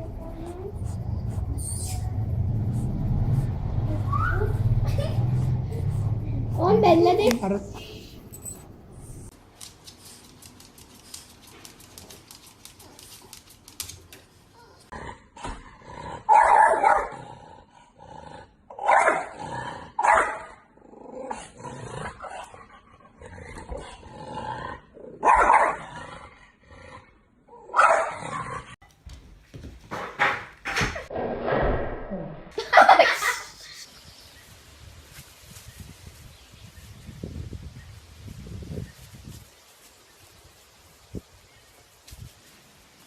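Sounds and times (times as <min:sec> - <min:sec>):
dog barking and growling: 0:14.6 - 0:28.8.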